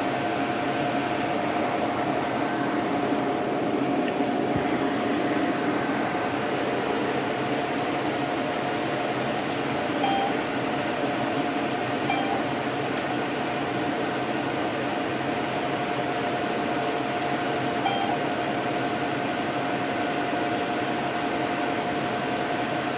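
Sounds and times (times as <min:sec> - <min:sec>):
cooling fan humming: 0:00.0 - 0:22.9
short electronic beeps: 0:10.0 - 0:10.4, 0:12.1 - 0:12.5, 0:17.9 - 0:18.2.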